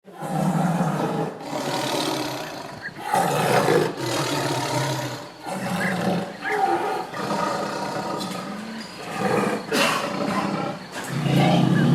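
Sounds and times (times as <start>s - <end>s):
large animal roaring: 0.1s - 11.9s.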